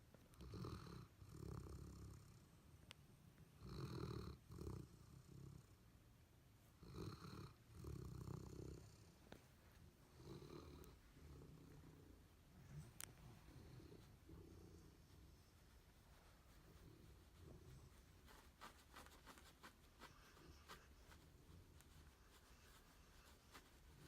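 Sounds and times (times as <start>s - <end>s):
dog snoring: 0.4s - 2.4s, 3.6s - 5.7s, 6.8s - 9.2s, 10.1s - 11.9s.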